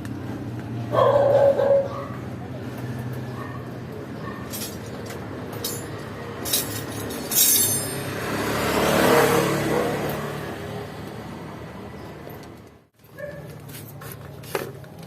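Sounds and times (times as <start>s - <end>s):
hand tools clinking on metal: 4.2s - 8.2s.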